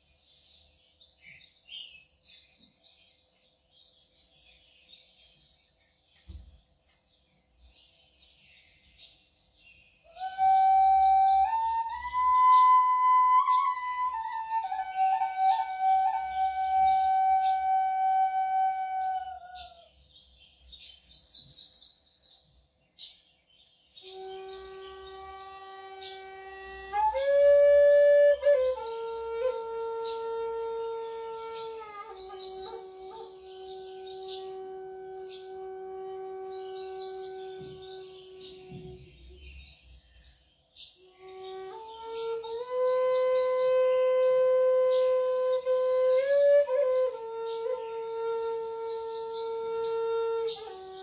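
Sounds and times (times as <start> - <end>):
birds chirping: 0.0 - 51.0
flute playing long notes: 10.1 - 19.9, 24.0 - 39.5, 41.0 - 51.0.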